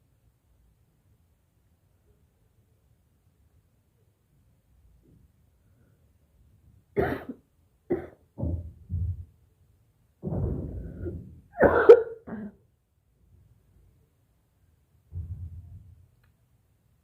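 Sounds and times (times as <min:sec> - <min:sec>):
woman coughing up phlegm: 0:07.0 - 0:08.2, 0:11.6 - 0:12.6.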